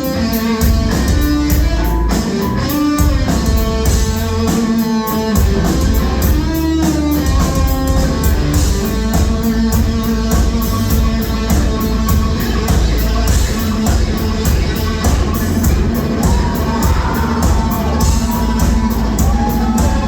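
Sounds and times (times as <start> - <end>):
electric guitar riff: 0.0 - 20.0
heavy drums: 0.0 - 20.0.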